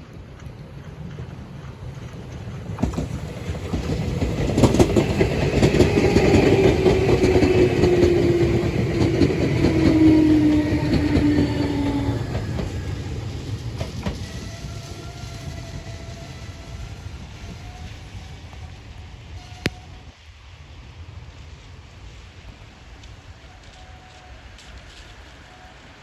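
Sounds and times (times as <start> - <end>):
train wheels clicking on rail joints: 0.0 - 18.8.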